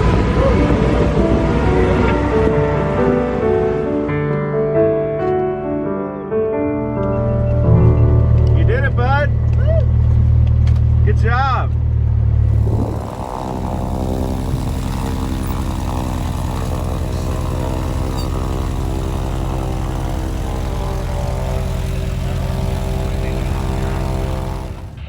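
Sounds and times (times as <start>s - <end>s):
propeller plane engine droning: 0.0s - 4.1s, 11.7s - 25.0s.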